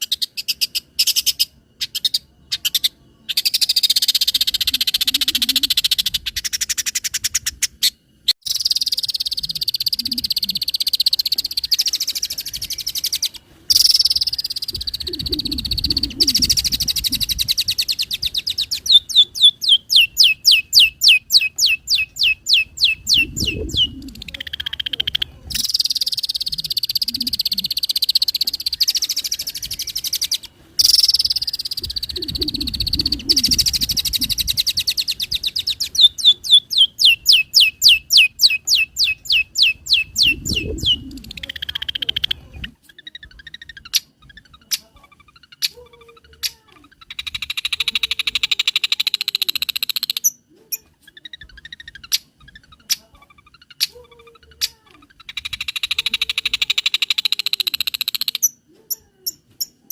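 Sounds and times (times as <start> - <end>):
shrike singing fast chattering song: 0.0 - 59.8.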